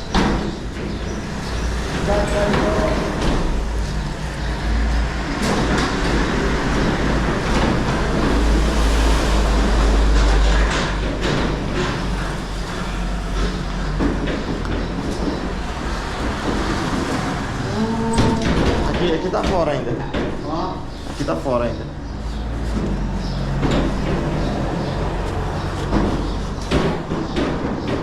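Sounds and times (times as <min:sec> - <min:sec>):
gate clanks and knocks: 0:00.0 - 0:03.8, 0:05.0 - 0:20.9, 0:22.7 - 0:28.0
sliding gate rumbling on track: 0:00.0 - 0:28.0.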